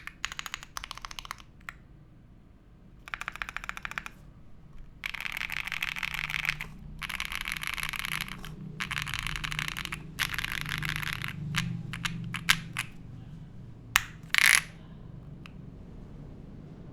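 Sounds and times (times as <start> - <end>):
mechanical keyboard typing: 0.0 - 1.8, 3.0 - 13.0, 14.0 - 15.6.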